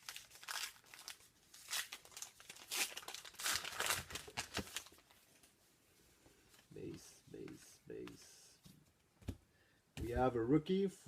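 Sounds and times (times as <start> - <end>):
wrapper crinkling and tearing: 0.0 - 5.2
cards rustling: 0.0 - 5.5, 6.4 - 8.4.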